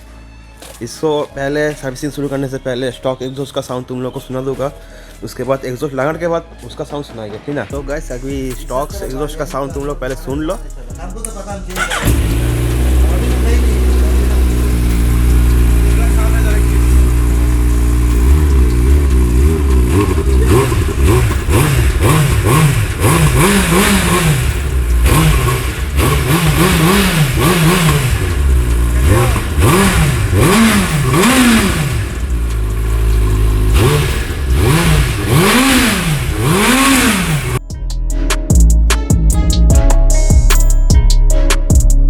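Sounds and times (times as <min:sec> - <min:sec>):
music: 0:00.0 - 0:36.4, 0:37.5 - 0:42.0
motorcycle engine revving: 0:11.8 - 0:37.6.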